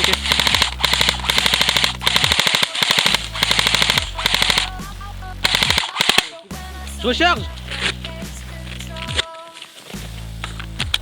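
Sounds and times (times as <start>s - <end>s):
airsoft gun firing bursts: 0.0s - 6.4s.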